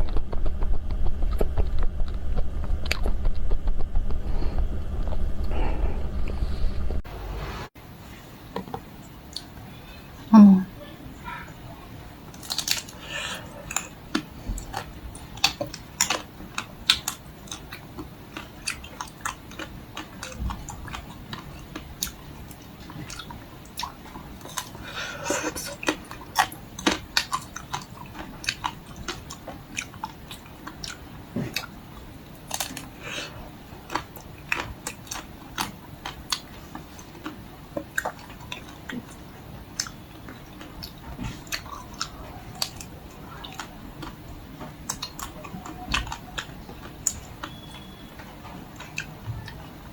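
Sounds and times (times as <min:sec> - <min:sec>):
biting and chewing ice cream: 0:12.2 - 0:49.9.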